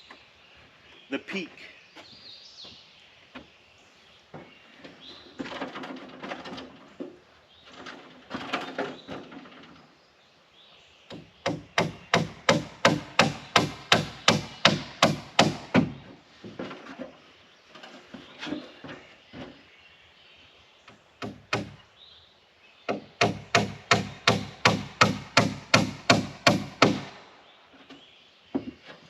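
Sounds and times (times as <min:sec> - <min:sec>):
wood being handled: 0:04.3 - 0:09.9, 0:11.4 - 0:19.7, 0:27.7 - 0:29.0
hammer driving nails: 0:11.1 - 0:16.0, 0:21.2 - 0:21.8, 0:22.9 - 0:27.2.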